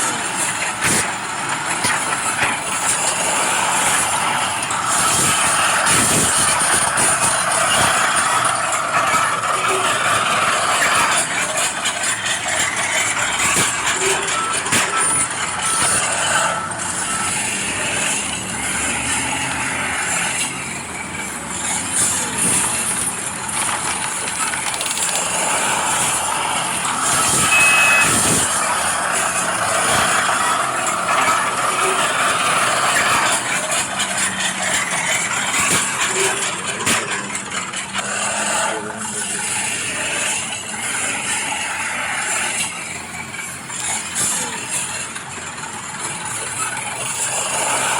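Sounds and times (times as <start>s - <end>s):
gravel scraping and clicking: 0.0s - 47.9s
small motors and gears whirring: 0.0s - 47.9s
steady high tone: 25.2s - 33.7s
short high beep: 27.4s - 28.4s.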